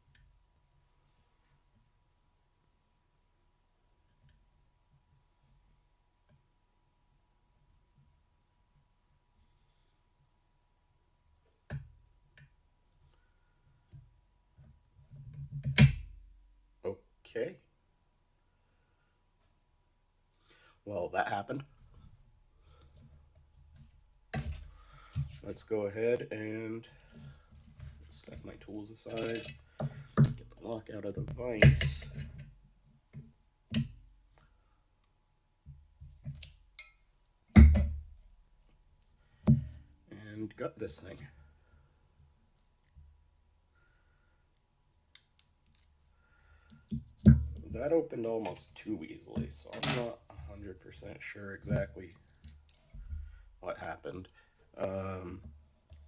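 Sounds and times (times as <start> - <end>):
tools knocking and clicking: 36.3 - 37.0.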